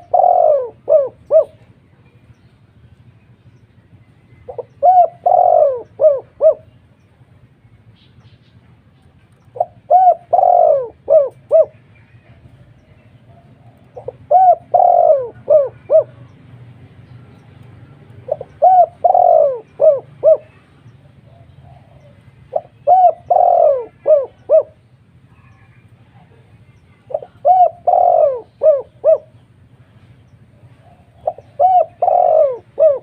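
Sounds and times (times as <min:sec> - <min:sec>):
dove cooing: 0:00.0 - 0:01.9, 0:04.4 - 0:06.8, 0:09.3 - 0:16.6, 0:17.8 - 0:29.8, 0:30.4 - 0:33.0.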